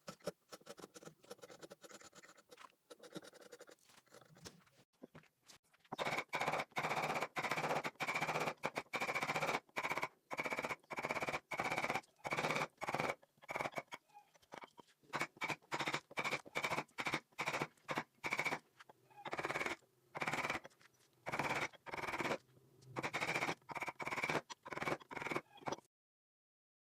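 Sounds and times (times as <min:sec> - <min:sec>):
hand tool scraping wood: 0:00.0 - 0:04.8.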